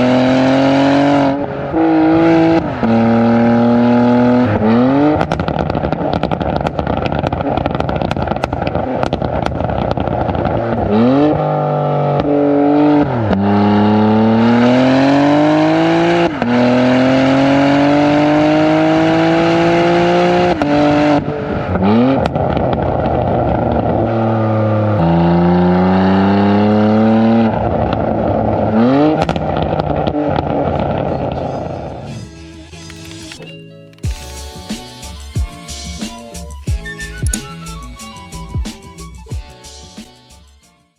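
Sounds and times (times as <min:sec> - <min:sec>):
car engine accelerating hard: 0:00.0 - 0:31.5.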